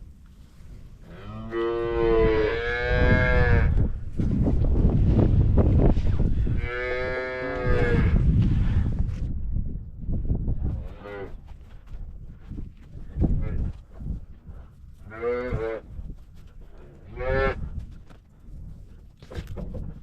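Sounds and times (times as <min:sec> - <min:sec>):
calves mooing: 0:06.5 - 0:08.2.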